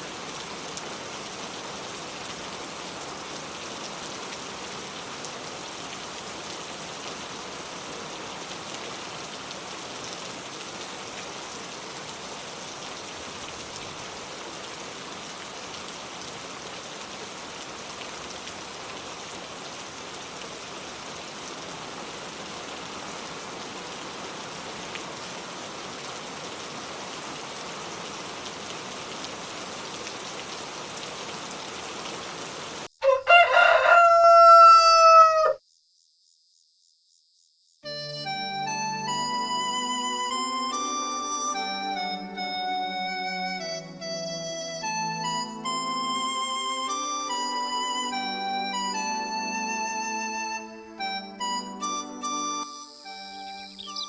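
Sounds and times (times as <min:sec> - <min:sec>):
steady rain falling: 0:00.0 - 0:35.0.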